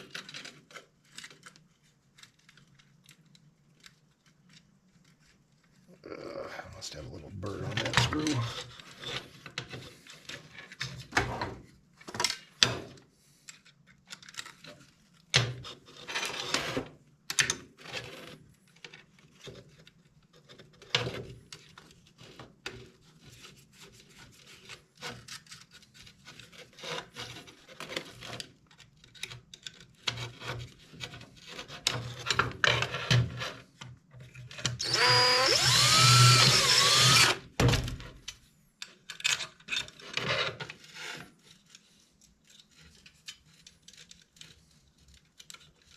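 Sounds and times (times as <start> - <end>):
small metal hardware clicks and scrapes: 38.3 - 45.9.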